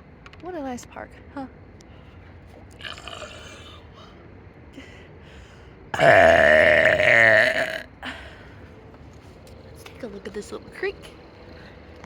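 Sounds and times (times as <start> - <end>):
long loud burp: 2.8 - 3.8, 5.9 - 8.2.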